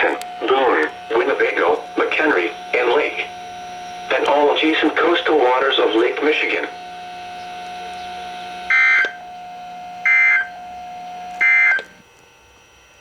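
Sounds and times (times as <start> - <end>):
digital data screech bursts: 0.0 - 9.2
faint steady radio hum: 0.0 - 12.0.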